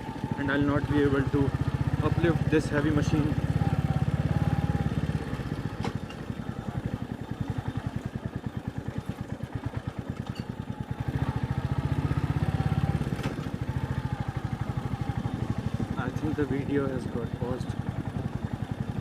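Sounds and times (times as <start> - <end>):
motorcycle engine chugging: 0.0 - 19.0.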